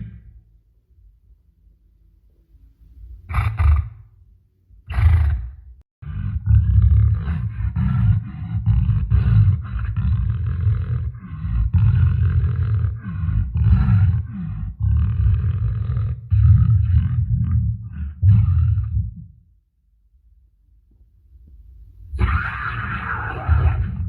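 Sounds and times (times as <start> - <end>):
large animal roaring: 3.3 - 4.1, 4.9 - 19.4, 22.2 - 24.0.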